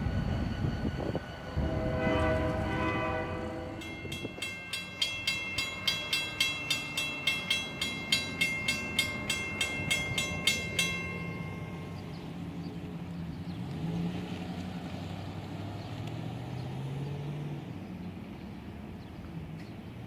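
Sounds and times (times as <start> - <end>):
railroad crossing bell ringing: 0.0 - 13.5
low engine rumble: 0.0 - 20.0.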